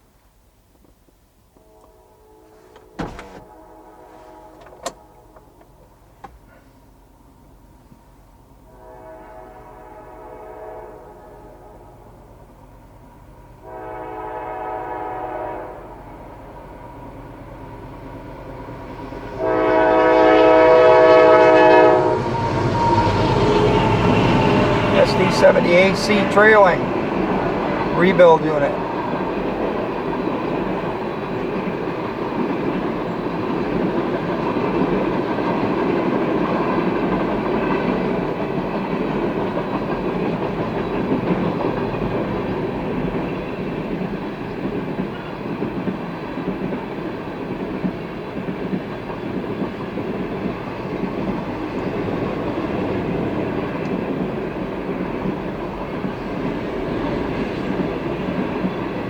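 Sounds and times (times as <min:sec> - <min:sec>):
freight train wheels rumbling: 0:00.8 - 0:59.0.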